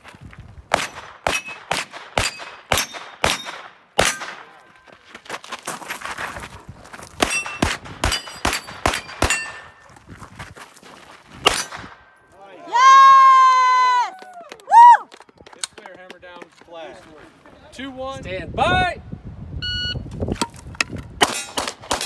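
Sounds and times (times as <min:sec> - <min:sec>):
steel plate clanging: 0:07.3 - 0:09.8.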